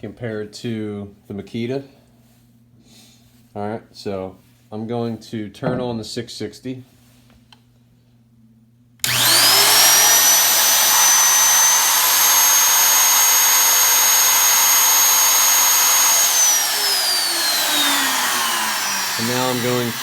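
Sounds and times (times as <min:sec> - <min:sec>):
router motor whine: 0:09.0 - 0:20.0.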